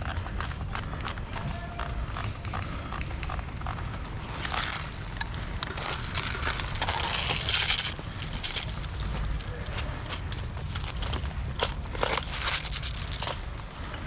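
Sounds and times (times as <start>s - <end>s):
footsteps crunching through dry brush: 4.1s - 14.0s.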